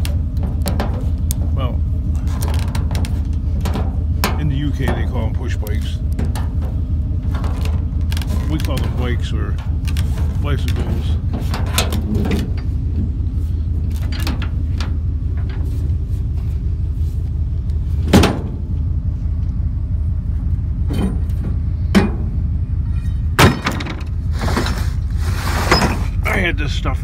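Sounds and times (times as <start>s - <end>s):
sharp knocks and clanks: 0.0s - 13.2s, 18.0s - 18.7s, 20.8s - 25.0s
vehicle engine rumble: 0.0s - 27.0s.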